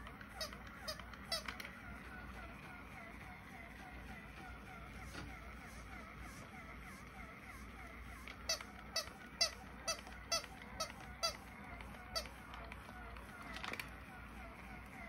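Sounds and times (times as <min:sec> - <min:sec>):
toy dog electronic yips: 0:00.0 - 0:01.9, 0:05.4 - 0:12.7.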